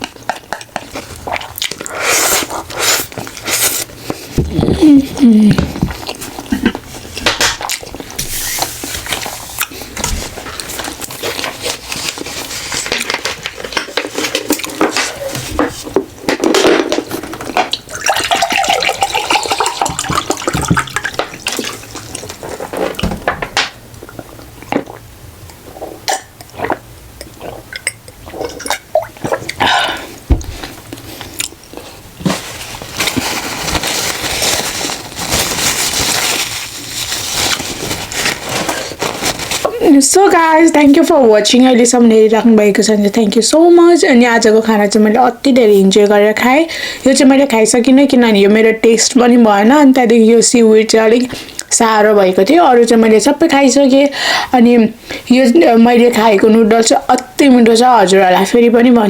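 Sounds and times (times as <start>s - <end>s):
chewing and slurping food: 0.0s - 8.2s, 17.7s - 23.0s, 23.9s - 32.0s.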